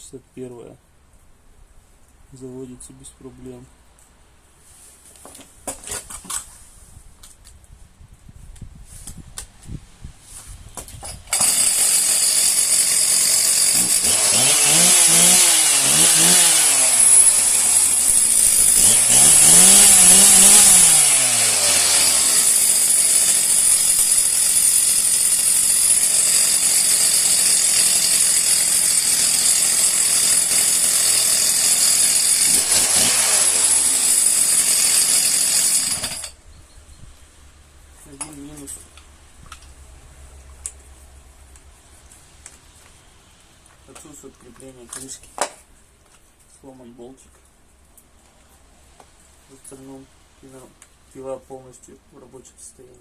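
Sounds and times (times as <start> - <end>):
chainsaw revving: 11.3 - 36.4.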